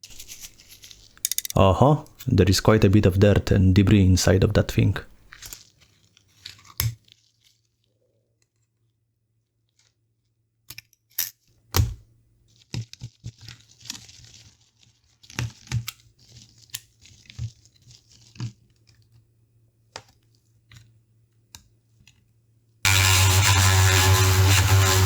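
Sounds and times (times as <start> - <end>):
scratchy scraping and rustling: 0.0 - 1.2.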